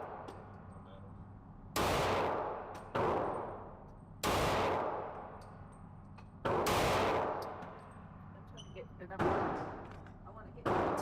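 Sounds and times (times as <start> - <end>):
gunshots with echoing decay: 1.8 - 5.4, 6.4 - 7.8, 9.2 - 9.9, 10.6 - 11.0.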